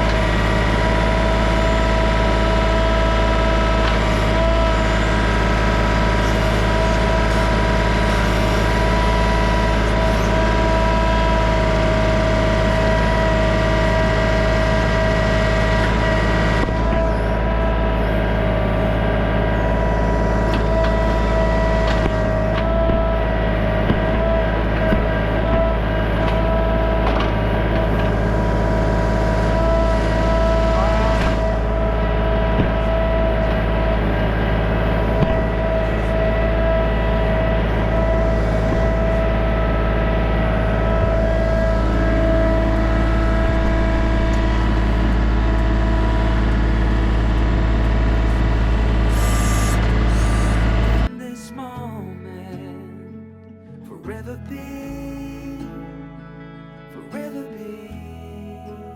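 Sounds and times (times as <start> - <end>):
tractor diesel engine running: 0.0 - 53.2
high whine: 0.0 - 58.9
music: 49.1 - 58.9.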